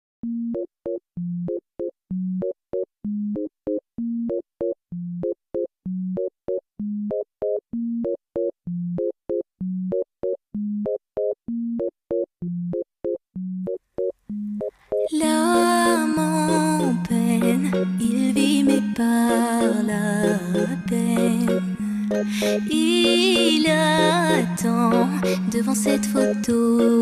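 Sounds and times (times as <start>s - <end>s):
electronic synthesizer music: 13.6s - 27.0s.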